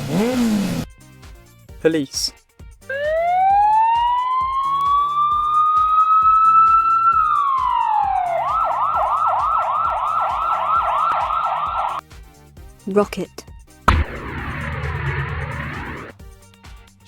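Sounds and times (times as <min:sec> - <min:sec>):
police siren wailing and yelping: 0:02.9 - 0:12.0.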